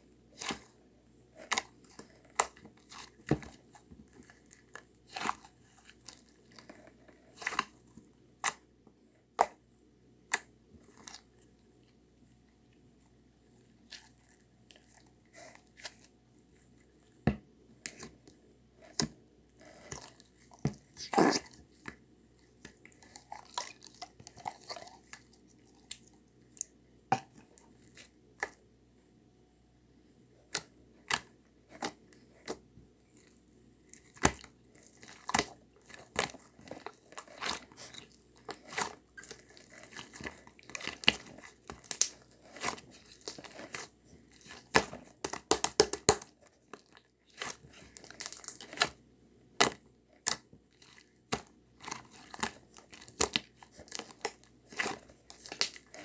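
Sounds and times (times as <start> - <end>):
hands squishing slime: 19.7 - 21.5, 34.0 - 49.0, 49.6 - 56.0.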